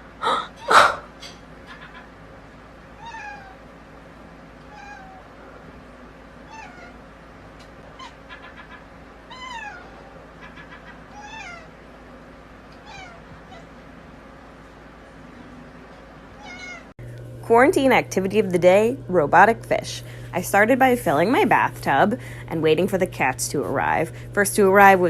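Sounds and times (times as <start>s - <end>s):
cat meowing: 3.0s - 3.6s, 4.6s - 5.6s, 6.4s - 7.0s, 9.3s - 11.8s, 12.7s - 13.8s, 16.4s - 16.9s.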